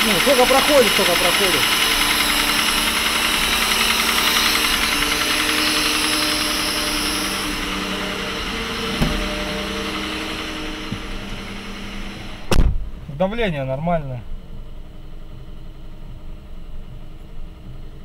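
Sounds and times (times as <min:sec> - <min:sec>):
rapid engine knock: 0:00.0 - 0:07.9
car engine idling: 0:00.0 - 0:18.0.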